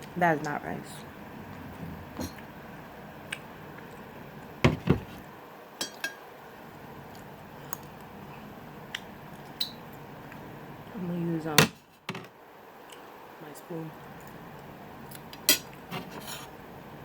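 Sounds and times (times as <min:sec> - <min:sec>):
loud knocks: 0:04.7 - 0:05.2
utensil clinking against dishes: 0:05.8 - 0:06.2.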